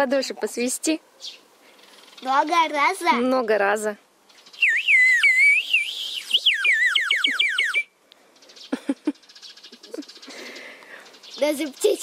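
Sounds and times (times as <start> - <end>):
water whistle warbling trill: 4.6 - 7.9.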